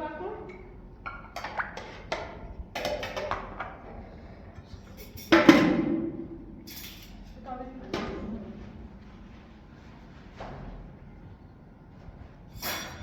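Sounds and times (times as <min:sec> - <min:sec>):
dishes and pots clattering: 0:01.1 - 0:03.8, 0:04.9 - 0:06.0, 0:12.6 - 0:13.0.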